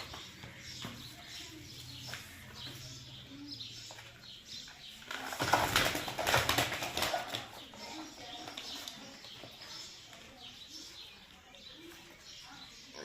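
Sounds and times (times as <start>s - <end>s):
wings flapping and scrabbling: 5.0s - 8.9s.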